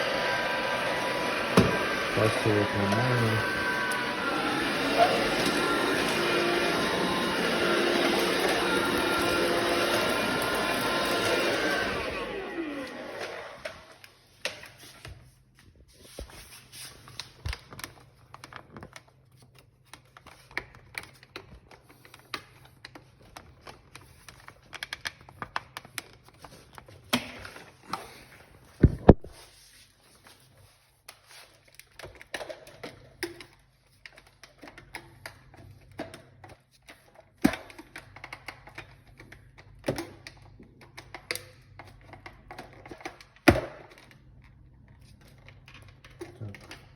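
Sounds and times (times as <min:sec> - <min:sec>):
vacuum cleaner motor: 0:00.0 - 0:15.1.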